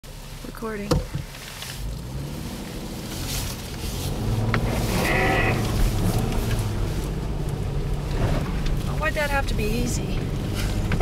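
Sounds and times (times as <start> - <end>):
car engine and road hum: 0.0 - 11.0
short bleat-like cry: 4.9 - 5.7.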